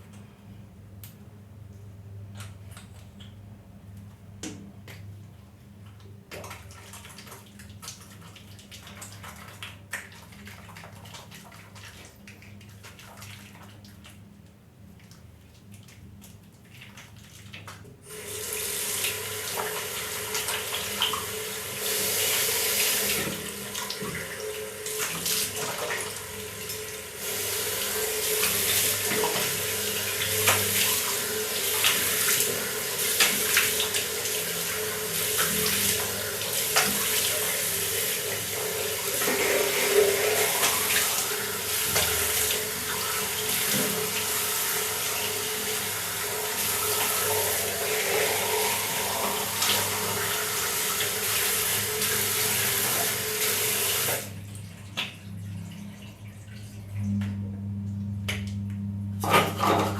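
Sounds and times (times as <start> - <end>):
tap water running into sink: 16.3 - 55.3.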